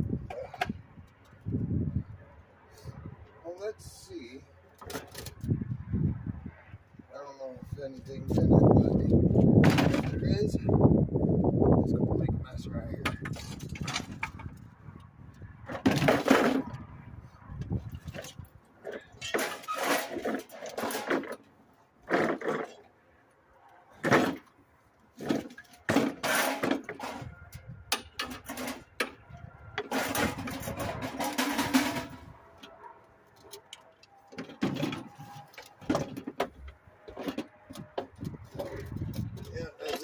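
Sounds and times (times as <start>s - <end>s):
lawn mower part clattering: 18.0s - 21.5s, 25.2s - 27.3s, 27.9s - 32.3s.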